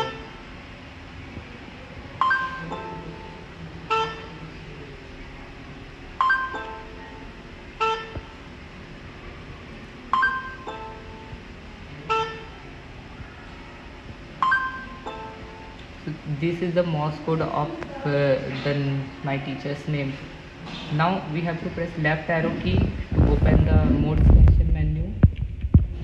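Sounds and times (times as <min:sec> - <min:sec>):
electronic chime tones: 0:02.2 - 0:03.3, 0:03.9 - 0:04.4, 0:06.2 - 0:07.2, 0:07.8 - 0:08.3, 0:10.1 - 0:11.3, 0:12.1 - 0:12.5, 0:14.4 - 0:15.7.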